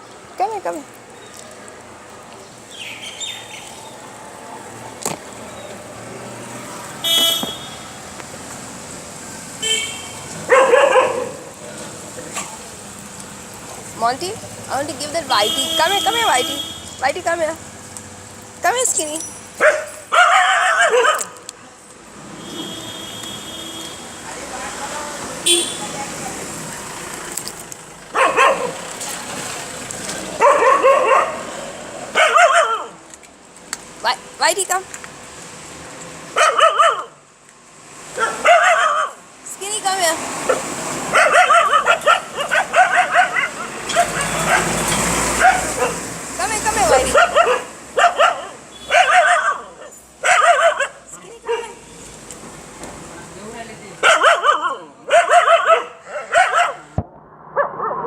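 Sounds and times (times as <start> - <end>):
vehicle horns tooting: 7.0 - 8.0, 9.6 - 10.3, 15.2 - 17.0, 22.4 - 24.3, 25.4 - 26.1, 48.7 - 49.1
puppy yipping: 19.6 - 21.4, 32.2 - 32.9, 36.4 - 37.1, 38.2 - 39.2, 41.2 - 44.7, 46.9 - 51.8, 54.0 - 56.9.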